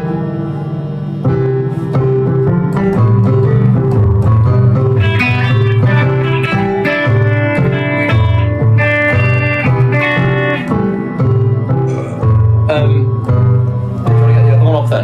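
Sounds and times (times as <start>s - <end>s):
guitar music: 1.4s - 14.2s
bass line: 2.3s - 13.7s.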